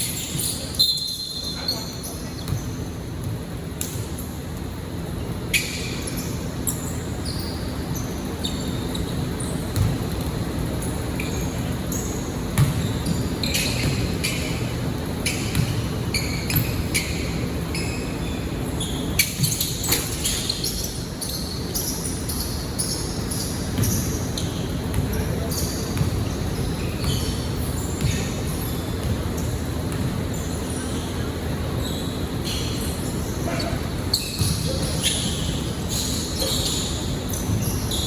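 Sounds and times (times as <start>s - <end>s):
sneakers squeaking: 0.0s - 38.0s
basketball bouncing: 9.6s - 11.0s, 12.4s - 17.2s, 23.7s - 30.3s, 33.5s - 35.7s.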